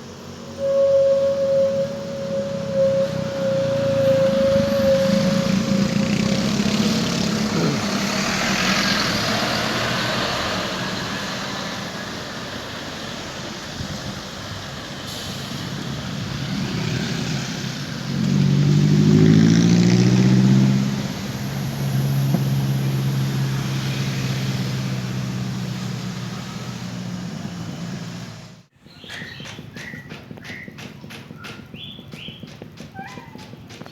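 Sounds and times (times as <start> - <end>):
heavy vehicle running: 0.0 - 33.9
multi-tone air horn blast: 0.6 - 9.0.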